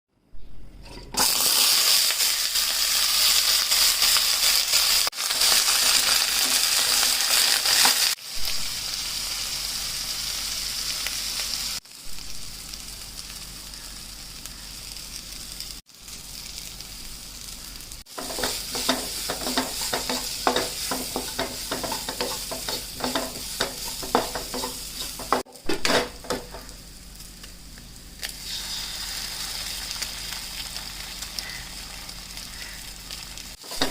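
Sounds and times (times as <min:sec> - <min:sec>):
food sizzling in a pan: 0:01.2 - 0:33.9
utensil stirring and scraping pan: 0:18.1 - 0:26.7, 0:33.6 - 0:33.9.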